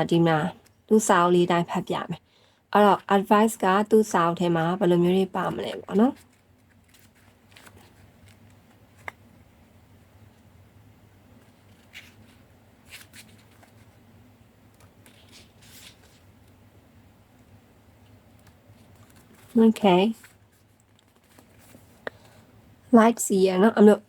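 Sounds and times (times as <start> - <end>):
faint low hum: 0.0 - 24.0
paper rustling: 5.4 - 9.3, 11.3 - 16.6, 17.9 - 22.5.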